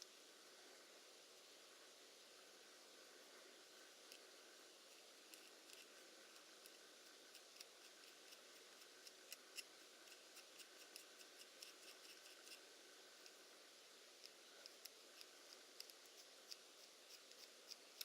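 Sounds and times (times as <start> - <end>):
faint light clicks and ticks: 4.9 - 12.6, 14.2 - 18.0.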